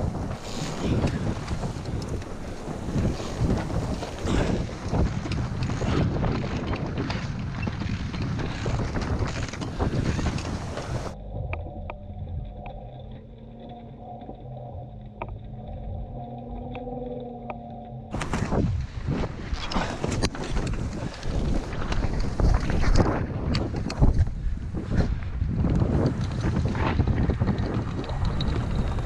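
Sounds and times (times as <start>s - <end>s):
boat gear knocking and rattling: 0.0s - 11.5s
wind buffeting microphone: 0.0s - 29.0s
steady hum: 10.9s - 19.1s.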